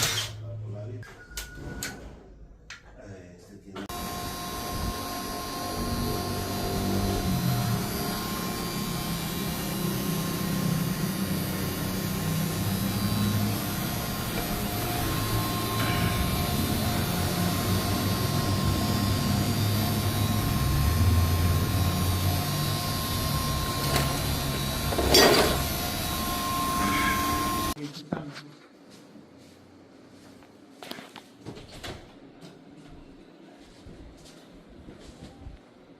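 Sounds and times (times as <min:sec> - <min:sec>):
machine motor humming: 0:03.9 - 0:27.8.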